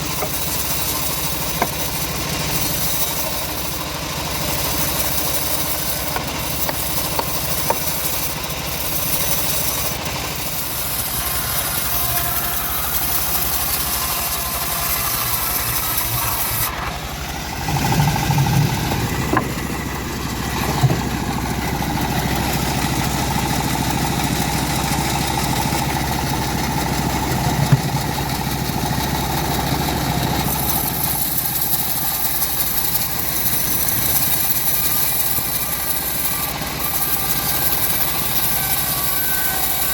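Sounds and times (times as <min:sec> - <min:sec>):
bandsaw mill engine running: 0:00.0 - 0:39.9
heavy thumps: 0:17.7 - 0:22.8, 0:27.2 - 0:28.4.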